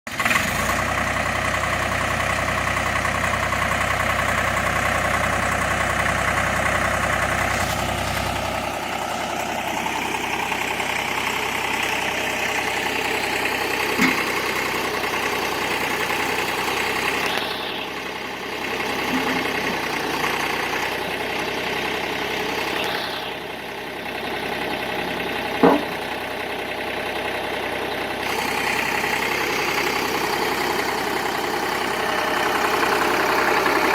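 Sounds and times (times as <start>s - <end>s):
diesel engine idling: 0.1s - 33.9s
short knock: 25.6s - 25.9s.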